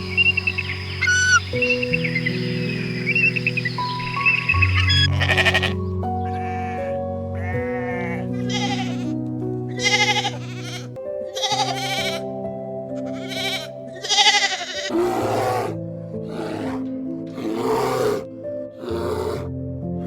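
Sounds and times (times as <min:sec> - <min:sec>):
soft background music: 0:00.0 - 0:20.0
sheep bleating: 0:04.7 - 0:12.3, 0:13.0 - 0:15.0.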